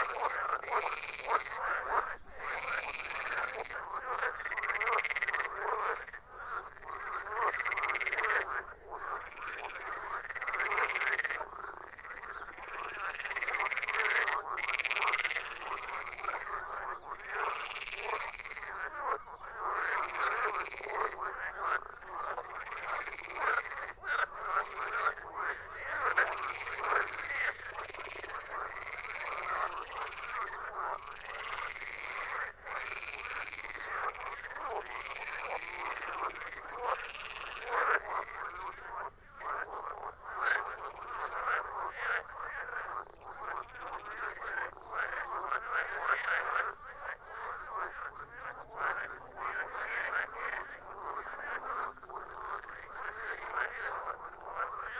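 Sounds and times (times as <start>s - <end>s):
chorus of frogs croaking: 0.0s - 54.9s.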